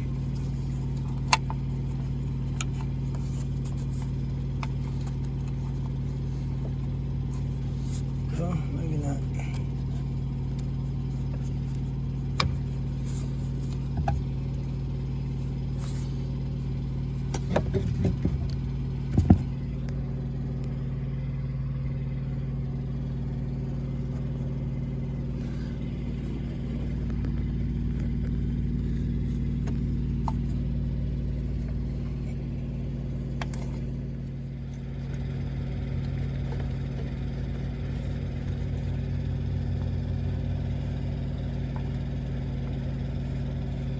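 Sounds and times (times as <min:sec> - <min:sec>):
vehicle engine idling: 0:00.0 - 0:43.9
sharp clicks and knocks: 0:13.6 - 0:14.4, 0:17.2 - 0:19.6.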